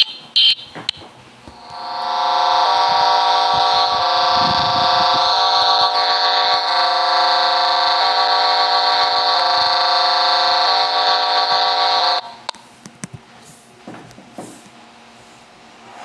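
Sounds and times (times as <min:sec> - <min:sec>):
buzzy multi-tone alarm signal: 0:01.6 - 0:12.4.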